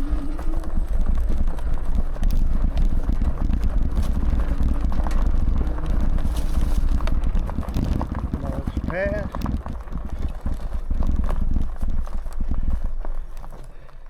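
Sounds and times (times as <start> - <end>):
bike rattling and knocking: 0.0 - 14.0
bike tyres rumbling on rough ground: 0.0 - 14.0.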